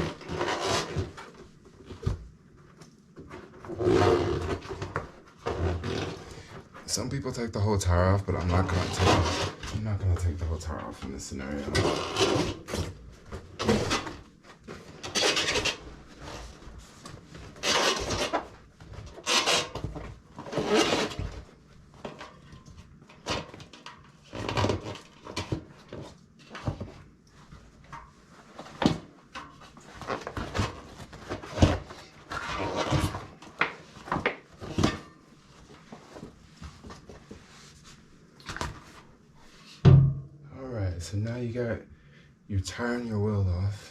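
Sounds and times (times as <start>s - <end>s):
rubber rubbing and scraping: 0.0s - 1.4s, 3.3s - 6.8s, 8.3s - 10.8s, 11.4s - 13.0s, 13.6s - 21.5s, 28.4s - 34.5s.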